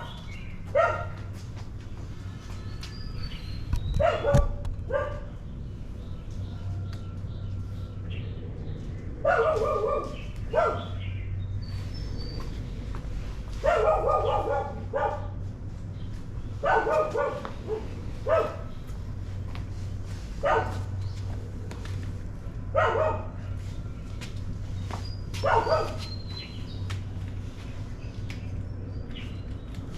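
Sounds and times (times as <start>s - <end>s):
dog barking: 0.0s - 1.2s, 4.0s - 5.4s, 9.2s - 11.1s, 13.6s - 15.4s, 16.6s - 18.8s, 20.4s - 20.9s, 22.7s - 23.4s, 25.4s - 26.1s
steady low hum: 0.0s - 29.9s.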